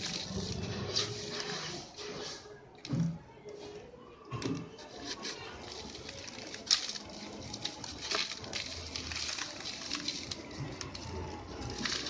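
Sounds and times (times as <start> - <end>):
concrete lumps crushed crunching: 5.0 - 12.0.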